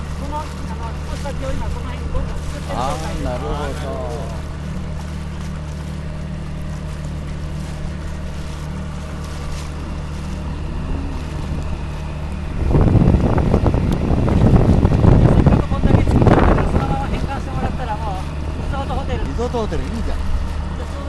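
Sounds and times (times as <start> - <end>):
boat engine droning: 0.0 - 21.0
wind buffeting microphone: 7.8 - 20.8.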